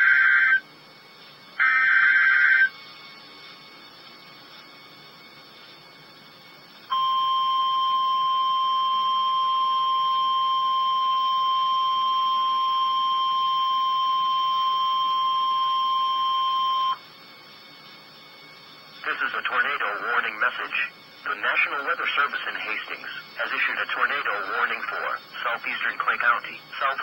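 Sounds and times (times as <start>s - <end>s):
steady warning alarm tone: 0.0s - 27.0s
faint hiss: 17.0s - 27.0s.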